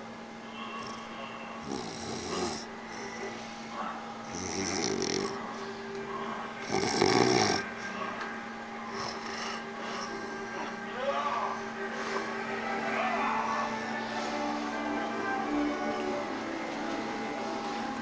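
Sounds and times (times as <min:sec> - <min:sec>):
person snoring: 0:00.8 - 0:03.4, 0:04.2 - 0:05.6, 0:06.6 - 0:07.8, 0:08.9 - 0:10.8.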